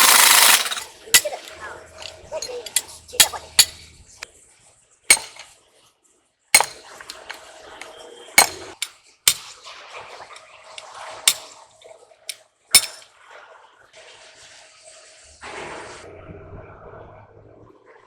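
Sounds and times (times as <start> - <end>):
metal clanking: 0.0 - 4.2, 5.1 - 5.5, 6.6 - 7.4, 8.4 - 9.6, 11.3 - 11.5, 12.8 - 13.0.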